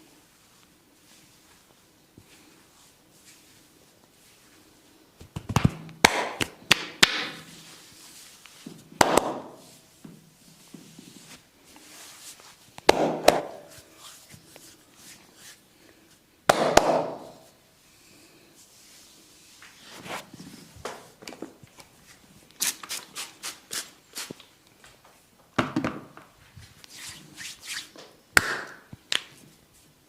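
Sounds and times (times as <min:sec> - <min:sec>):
sharp cracks and slaps of massage: 0:05.2 - 0:07.5, 0:09.0 - 0:09.6, 0:12.8 - 0:13.7, 0:16.5 - 0:17.5, 0:28.4 - 0:29.4.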